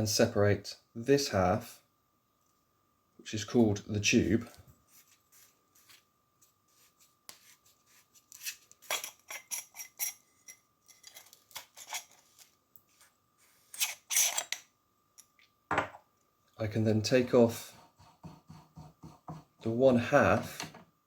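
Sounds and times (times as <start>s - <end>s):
metal parts clicking and scraping: 8.8s - 12.5s, 13.7s - 14.7s.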